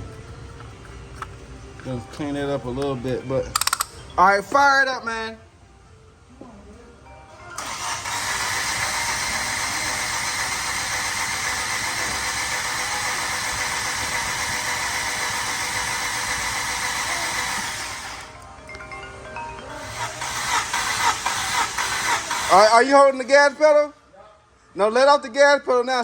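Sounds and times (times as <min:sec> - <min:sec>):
engine cranking on starter motor: 0:07.6 - 0:18.4, 0:19.8 - 0:23.1.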